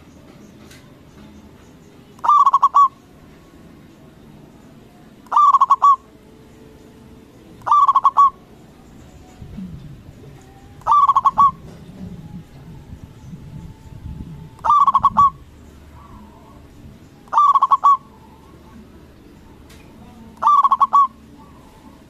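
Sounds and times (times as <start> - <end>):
dove cooing: 2.2 - 3.4, 5.2 - 6.3, 7.5 - 19.7, 20.3 - 22.0.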